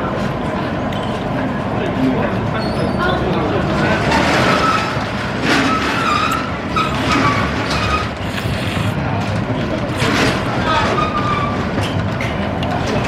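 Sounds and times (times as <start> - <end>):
passing vehicle traffic: 3.3 - 11.0.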